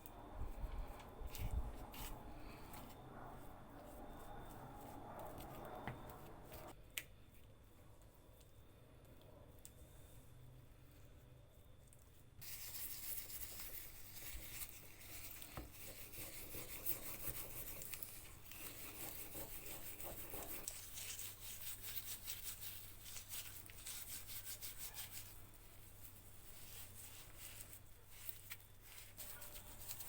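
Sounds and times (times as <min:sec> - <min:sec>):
hand sanding strokes: 0:12.4 - 0:30.0.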